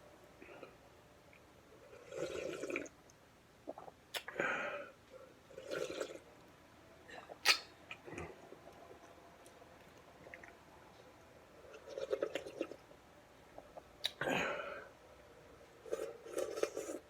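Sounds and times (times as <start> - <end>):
slurping noodles: 1.9 - 2.9, 5.5 - 6.2, 11.6 - 12.8, 15.8 - 17.0.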